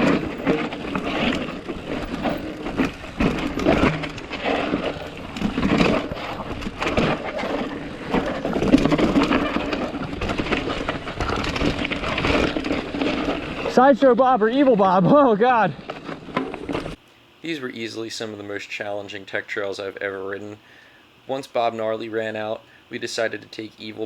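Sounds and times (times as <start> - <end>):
mountain bike clattering over rocks: 0.0 - 17.0.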